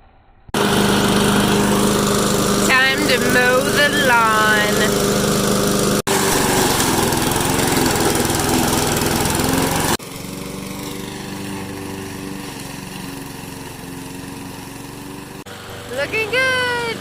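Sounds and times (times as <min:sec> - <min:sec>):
lawn mower engine running: 0:00.6 - 0:17.0.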